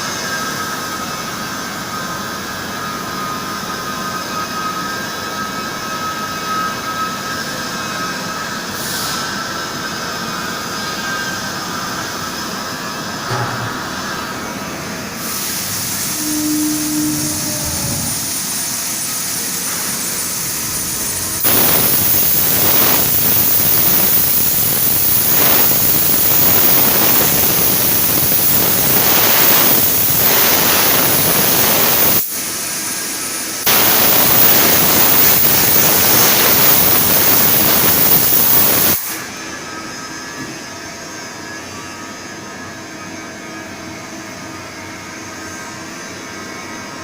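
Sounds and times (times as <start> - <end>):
loud spraying hiss: 15.2 - 39.2.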